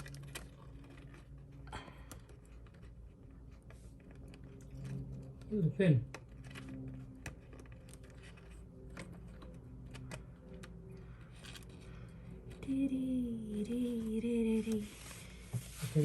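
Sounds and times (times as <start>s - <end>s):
person speaking: 12.6s - 16.0s.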